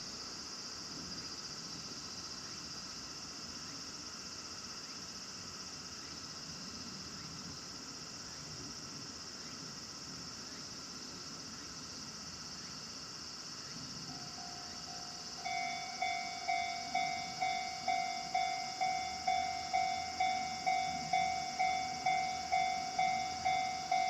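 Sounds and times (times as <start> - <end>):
faint low background noise: 0.0 - 24.0
high-pitched insect chorus: 0.0 - 24.0.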